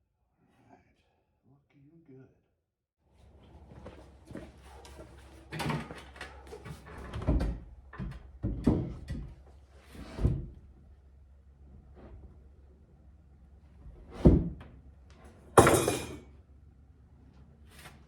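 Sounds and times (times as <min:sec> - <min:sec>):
objects knocking and clunking: 0:15.6 - 0:16.3.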